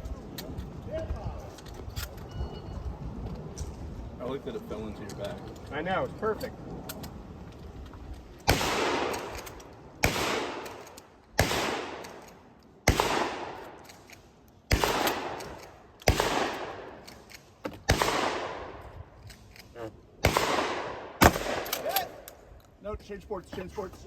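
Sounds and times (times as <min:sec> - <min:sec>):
shotgun shots with echo: 0:08.5 - 0:10.8, 0:11.4 - 0:12.2, 0:12.9 - 0:13.7, 0:14.7 - 0:17.0, 0:17.9 - 0:18.8, 0:20.2 - 0:22.0.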